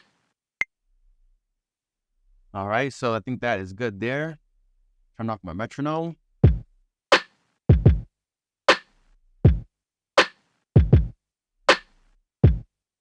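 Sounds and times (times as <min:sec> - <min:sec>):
drum machine kick: 0:06.4 - 0:06.7, 0:07.7 - 0:08.1, 0:09.5 - 0:09.7, 0:10.8 - 0:11.8, 0:12.4 - 0:12.7
drum machine snare: 0:07.2 - 0:08.1, 0:08.7 - 0:08.9, 0:09.5 - 0:12.6.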